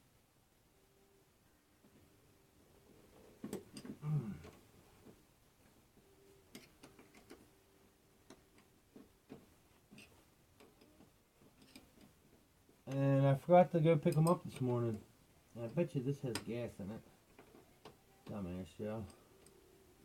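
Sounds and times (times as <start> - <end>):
hand tools clicking and tapping: 6.5 - 7.4, 8.2 - 13.0, 14.0 - 15.0, 15.6 - 16.6.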